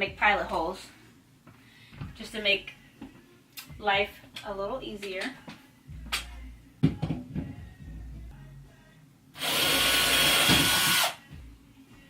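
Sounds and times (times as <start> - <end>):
power drill boring into wall: 9.4 - 11.2.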